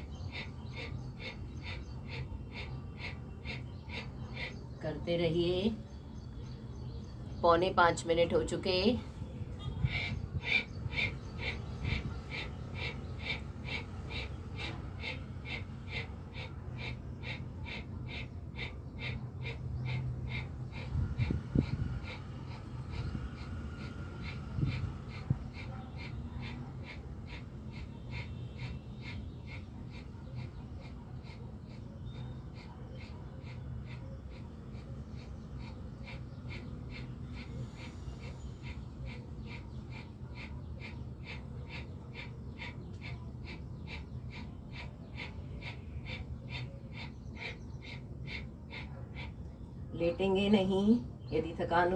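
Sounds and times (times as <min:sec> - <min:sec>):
steady low hum: 0:00.0 - 0:51.9
fast forceful breathing through nose: 0:09.1 - 0:49.7.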